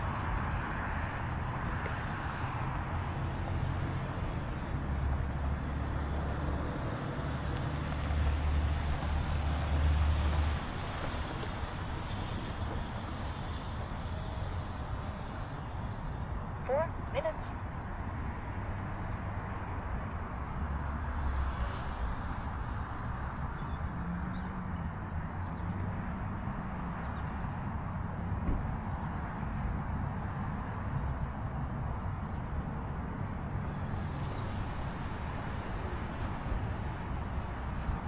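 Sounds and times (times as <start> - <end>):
small electric plane motor whine: 18.6 - 25.8, 31.6 - 37.6.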